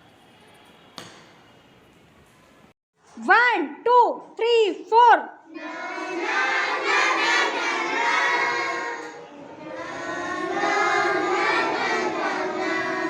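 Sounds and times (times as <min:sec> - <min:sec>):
children singing in chorus: 0:05.5 - 0:13.0.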